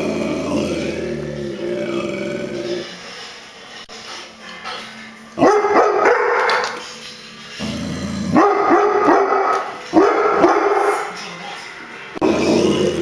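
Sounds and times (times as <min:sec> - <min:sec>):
dog barking: 0:05.4 - 0:06.8, 0:08.3 - 0:11.1.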